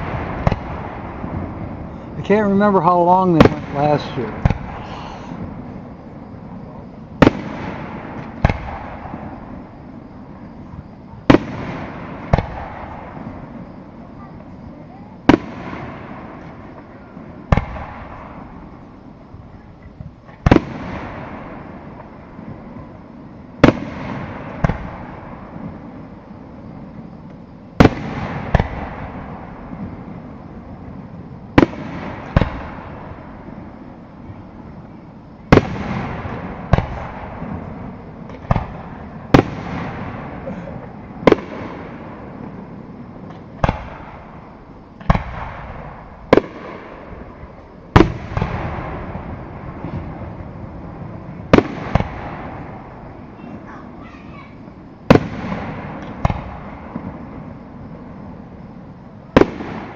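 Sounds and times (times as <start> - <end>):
firework shells bursting: 7.2 - 9.5, 27.2 - 30.0.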